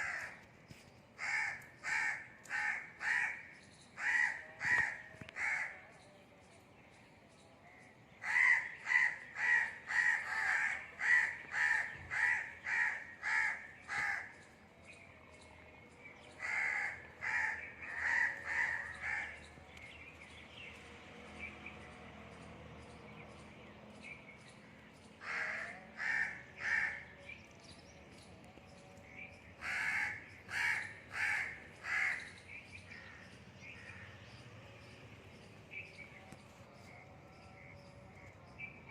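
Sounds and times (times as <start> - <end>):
crows cawing: 0.0 - 0.4, 1.2 - 5.8, 8.2 - 14.4, 16.4 - 19.4, 25.2 - 27.1, 29.6 - 34.2.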